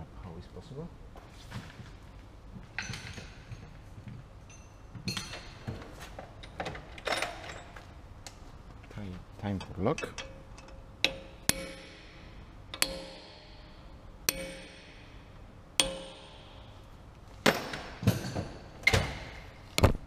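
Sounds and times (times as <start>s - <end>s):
hammer striking metal: 10.0s - 16.8s.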